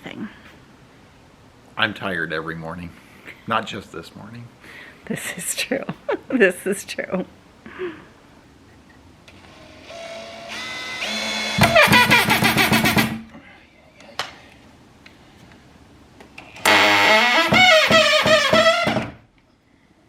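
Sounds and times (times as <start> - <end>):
cordless drill driving screws: 9.3 - 12.9, 16.6 - 19.1.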